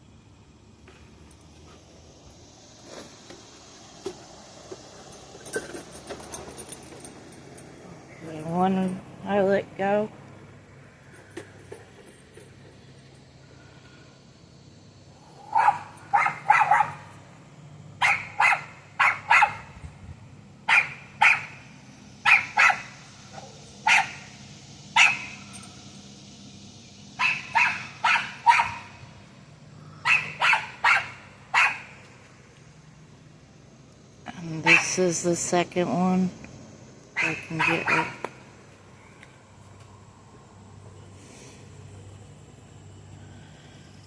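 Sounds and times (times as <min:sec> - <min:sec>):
dog barking: 0:15.5 - 0:17.1, 0:18.0 - 0:19.7, 0:20.7 - 0:21.6, 0:22.2 - 0:24.3, 0:25.0 - 0:25.4, 0:27.2 - 0:29.0, 0:30.0 - 0:31.9, 0:34.7 - 0:34.9, 0:37.2 - 0:38.2.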